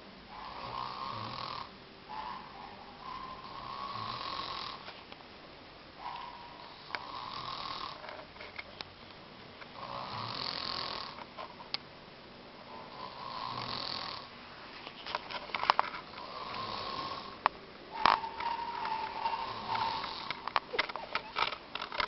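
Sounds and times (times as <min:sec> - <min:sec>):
man snoring: 0:00.5 - 0:01.7, 0:03.4 - 0:04.8, 0:06.6 - 0:08.0, 0:09.8 - 0:11.2, 0:12.9 - 0:14.3, 0:16.2 - 0:17.4, 0:19.1 - 0:20.4.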